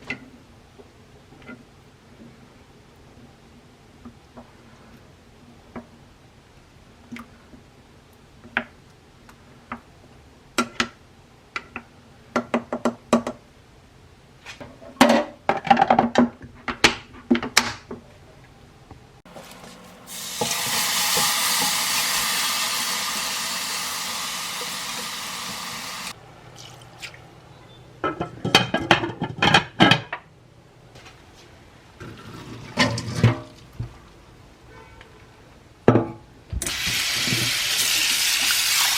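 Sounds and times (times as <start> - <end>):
kitchen tap running: 19.3 - 27.1, 36.6 - 38.9
dishes and utensils clattering: 28.0 - 30.2, 32.0 - 33.6.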